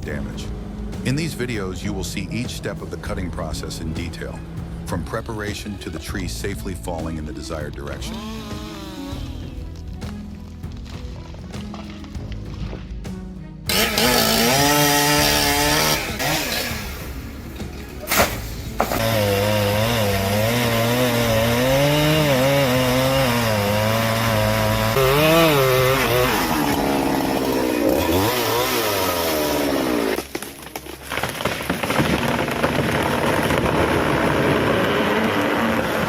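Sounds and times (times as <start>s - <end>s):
chainsaw cutting tree trunk: 8.0s - 11.0s, 13.7s - 36.0s.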